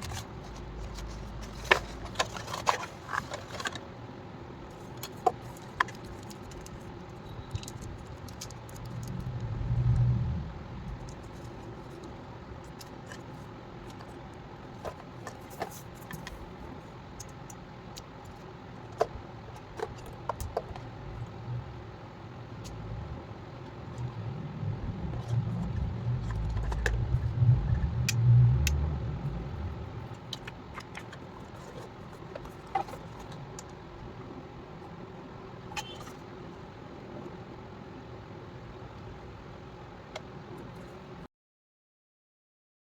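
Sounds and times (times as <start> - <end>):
steady background hum: 0.0 - 41.3
plastic items clicking: 5.0 - 9.2
low rumble: 8.7 - 11.8, 20.8 - 30.8.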